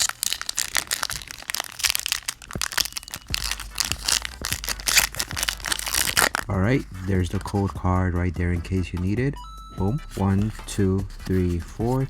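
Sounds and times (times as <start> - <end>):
foil wrapper tearing and crinkling: 0.0 - 6.5.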